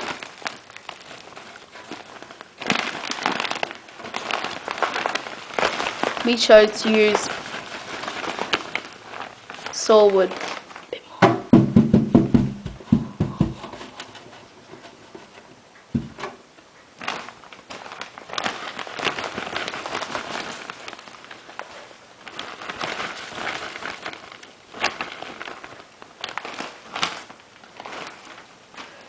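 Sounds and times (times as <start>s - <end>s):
wood bedding rustling: 0.0s - 29.0s
sharp knocks: 11.2s - 13.9s, 15.9s - 16.4s.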